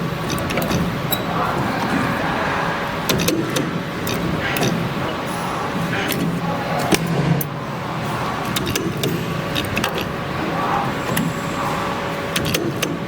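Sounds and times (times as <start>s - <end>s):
sharp metallic clicks: 3.1s - 4.9s, 8.4s - 10.1s, 12.3s - 13.0s.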